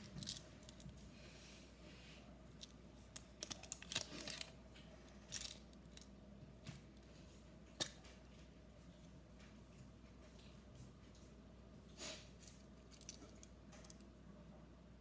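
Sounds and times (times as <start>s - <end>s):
mint wrapper clicks and crinkles: 3.0s - 6.1s.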